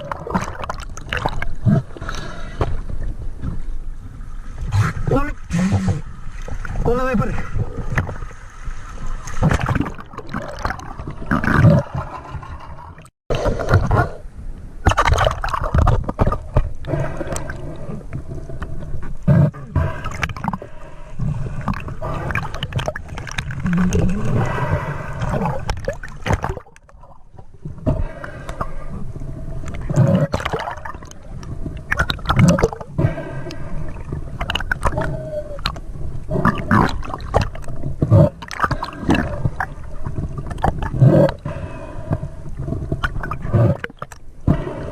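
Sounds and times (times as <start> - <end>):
water sloshing and gurgling: 0.0 - 44.9.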